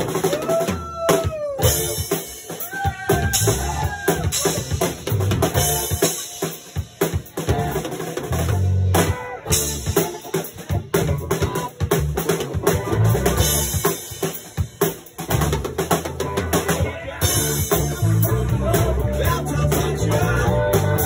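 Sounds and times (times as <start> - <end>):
drum kit: 0.0 - 21.0
electric bass line: 1.6 - 2.2, 3.1 - 6.1, 7.4 - 14.2, 15.2 - 21.0.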